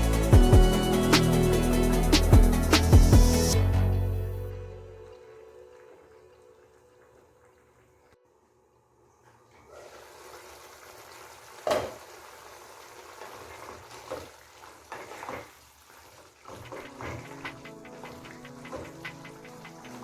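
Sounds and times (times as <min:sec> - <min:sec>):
food sizzling in a pan: 0:09.8 - 0:16.3.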